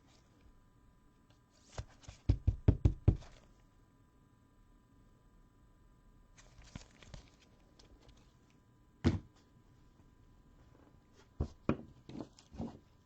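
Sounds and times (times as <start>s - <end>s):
knocks on a tabletop: 2.3s - 3.2s.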